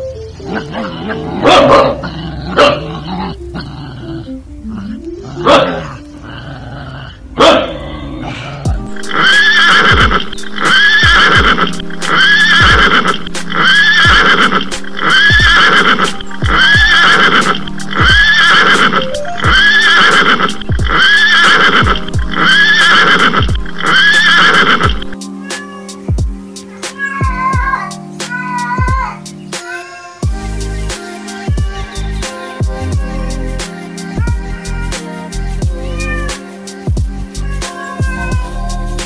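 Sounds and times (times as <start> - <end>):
horse neighing: 0.6 - 25.8
background music with steady beat: 8.6 - 39.0.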